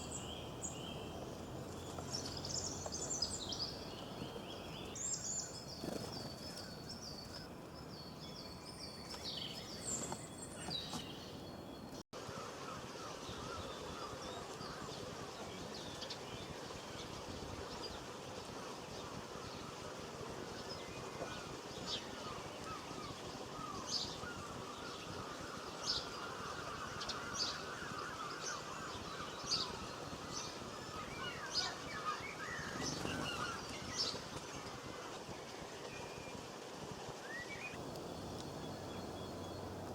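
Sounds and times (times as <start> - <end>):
songbirds chirping and singing: 0.0 - 12.0, 37.3 - 39.9
outdoor background hiss: 0.0 - 39.9.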